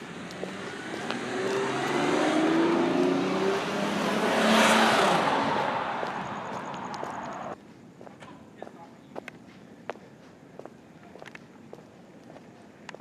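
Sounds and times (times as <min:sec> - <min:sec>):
car driving past: 0:00.0 - 0:07.6.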